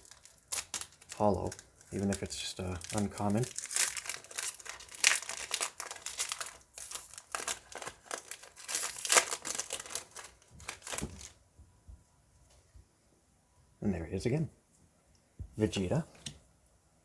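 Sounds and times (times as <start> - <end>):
foil wrapper crinkling and tearing: 0.0 - 11.4.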